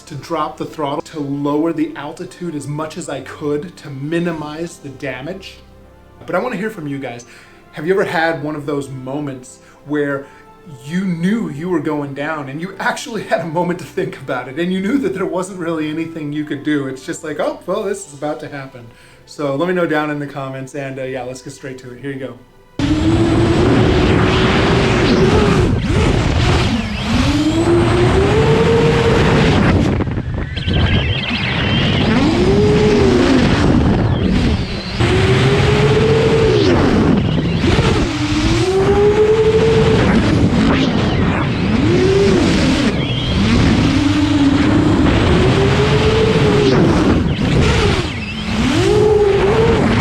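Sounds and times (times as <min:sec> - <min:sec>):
drone buzzing whine: 0:22.7 - 0:50.0.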